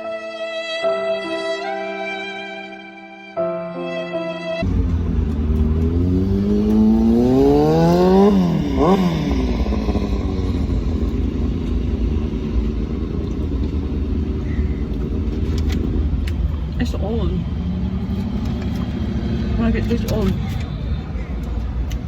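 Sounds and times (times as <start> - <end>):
vehicle engine accelerating: 4.6 - 21.6.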